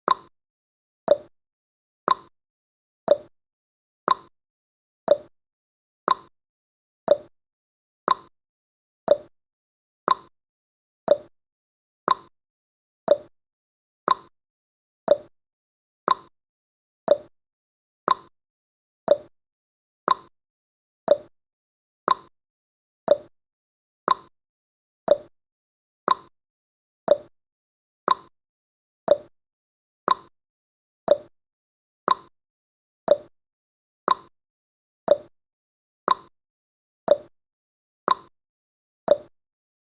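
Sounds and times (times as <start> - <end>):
timer ticking clicks: 0.1 - 0.3, 1.1 - 1.3, 2.1 - 2.3, 3.1 - 3.3, 4.1 - 4.3, 5.1 - 5.3, 6.1 - 6.3, 7.1 - 7.3, 8.1 - 8.3, 9.1 - 9.3, 10.1 - 10.3, 11.1 - 11.3, 12.1 - 12.3, 13.1 - 13.3, 14.1 - 14.3, 15.1 - 15.3, 16.1 - 16.3, 17.1 - 17.3, 18.1 - 18.3, 19.1 - 19.3, 20.1 - 20.3, 21.1 - 21.3, 22.1 - 22.3, 23.1 - 23.3, 24.1 - 24.3, 25.1 - 25.3, 26.1 - 26.3, 27.1 - 27.3, 28.1 - 28.3, 29.1 - 29.3, 30.1 - 30.3, 31.1 - 31.3, 32.1 - 32.3, 33.1 - 33.3, 34.1 - 34.3, 35.1 - 35.3, 36.1 - 36.3, 37.1 - 37.3, 38.1 - 38.3, 39.1 - 39.3.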